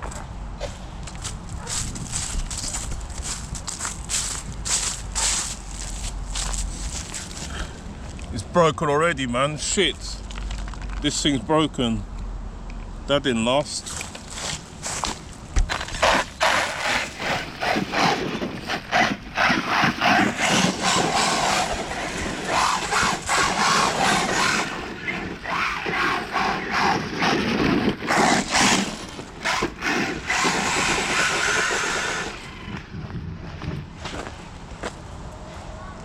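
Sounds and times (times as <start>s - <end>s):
tyres on rough ground: 0.0s - 11.8s, 13.4s - 35.6s
electric motor whining: 19.4s - 32.9s.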